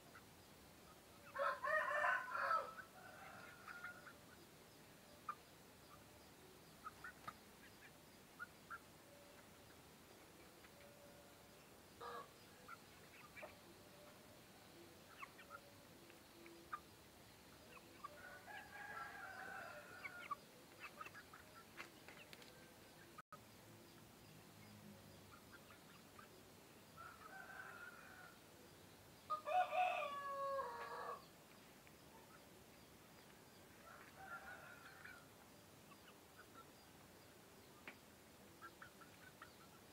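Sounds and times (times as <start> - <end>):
rooster crowing: 1.4 - 4.0, 18.1 - 20.3, 29.3 - 31.2, 33.8 - 35.2
chicken clucks: 6.8 - 9.7, 12.0 - 14.2, 15.0 - 16.9, 17.5 - 23.1, 38.6 - 39.8.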